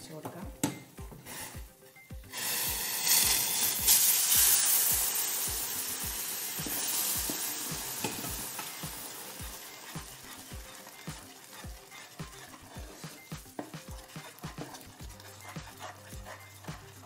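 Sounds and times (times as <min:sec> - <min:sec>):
hissing and sizzling: 0:01.1 - 0:17.0
water poured into pan: 0:02.4 - 0:10.0.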